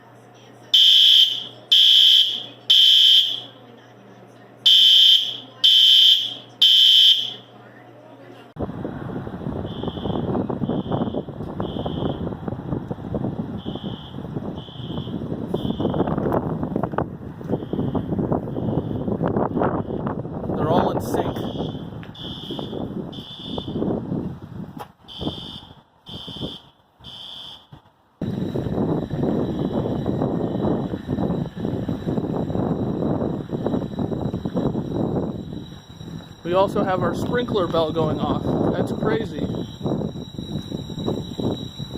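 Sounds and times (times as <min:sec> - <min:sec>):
high-pitched fire alarm horn blasts: 0:00.7 - 0:03.6, 0:04.7 - 0:07.5, 0:09.6 - 0:12.4, 0:13.5 - 0:16.3, 0:17.4 - 0:20.2, 0:20.8 - 0:24.0, 0:25.1 - 0:41.9
steady low rumbling: 0:08.4 - 0:27.1, 0:28.2 - 0:41.9.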